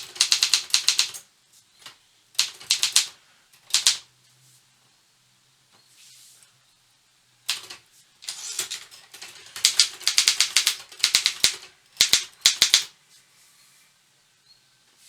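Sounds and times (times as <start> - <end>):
manual typewriter typing: 0.0 - 1.2, 2.4 - 4.0, 7.5 - 12.9.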